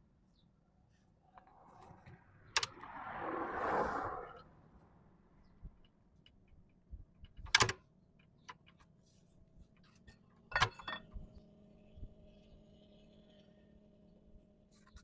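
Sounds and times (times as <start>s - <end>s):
metallic clinks and knocks: 10.0s - 11.3s.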